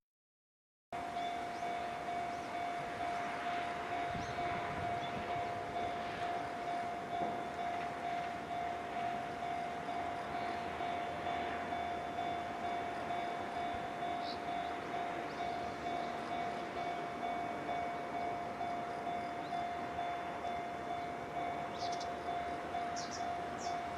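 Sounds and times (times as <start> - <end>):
steady rushing noise: 1.0 - 21.8
level crossing warning bell: 1.0 - 23.9.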